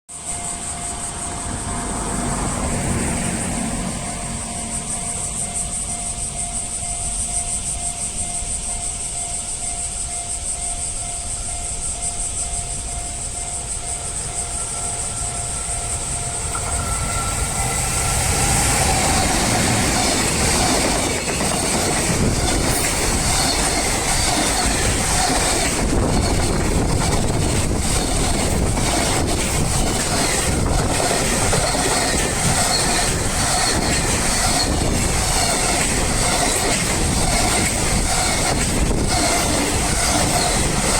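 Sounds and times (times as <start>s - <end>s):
freight train passing: 0.1s - 40.9s
level crossing warning bell: 0.2s - 40.9s
wheels clacking over rail joints: 13.8s - 40.9s.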